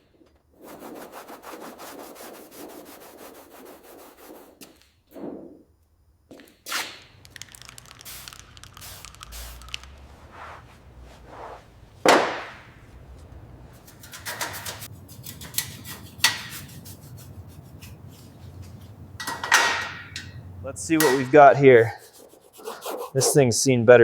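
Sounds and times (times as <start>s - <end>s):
rubbing and scraping: 0.5s - 5.4s, 6.7s - 23.6s
scattered clicks: 7.2s - 10.0s
faint low hum: 9.2s - 23.6s
sharp knocks: 12.0s - 12.9s, 13.9s - 21.5s.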